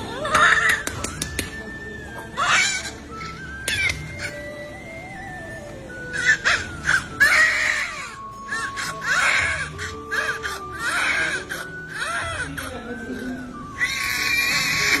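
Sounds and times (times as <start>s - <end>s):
baby crying: 0.0s - 1.0s, 2.4s - 4.4s, 6.1s - 12.9s, 13.7s - 15.0s
background music with slow beat: 0.0s - 15.0s.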